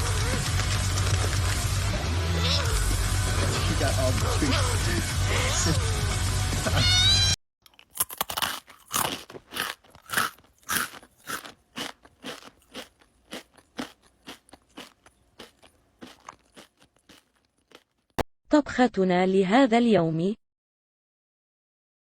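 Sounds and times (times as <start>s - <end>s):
crunchy chewing: 7.6s - 18.2s.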